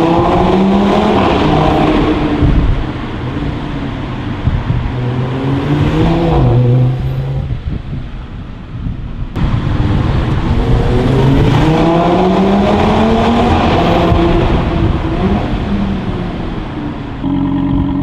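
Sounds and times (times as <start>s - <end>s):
car engine accelerating: 0.0s - 8.2s, 9.3s - 18.0s.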